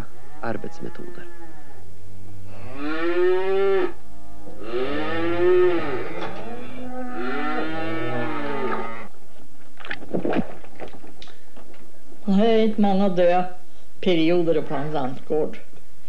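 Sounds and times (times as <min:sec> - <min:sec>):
cattle mooing: 0:00.0 - 0:01.8, 0:02.5 - 0:09.1.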